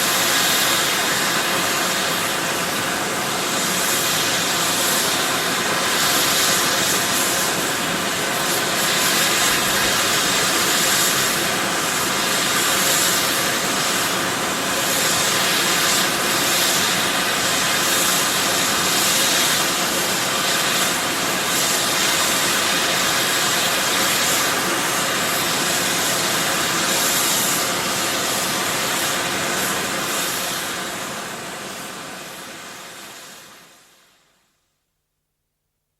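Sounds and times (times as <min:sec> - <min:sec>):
fumarole venting gas hiss: 0:00.0 - 0:34.3.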